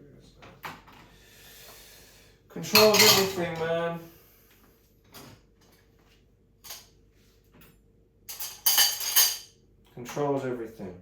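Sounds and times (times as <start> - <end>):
faint steady hum: 0.0 - 11.0
crockery and cutlery clattering: 2.6 - 3.8, 6.6 - 6.9, 8.3 - 10.2
dishes clinking: 2.7 - 3.7, 7.6 - 9.6.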